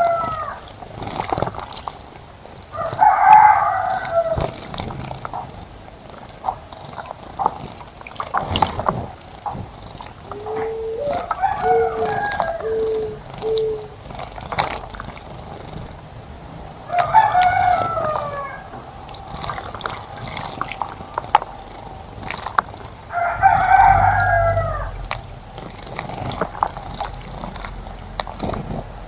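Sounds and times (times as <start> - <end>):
rooster crowing: 0.0 - 0.6, 2.7 - 4.4, 10.3 - 13.9, 16.8 - 18.8, 23.1 - 25.3
water dripping and ticking: 0.0 - 10.5, 13.2 - 29.0
birds chirping: 9.6 - 16.4, 17.0 - 28.2.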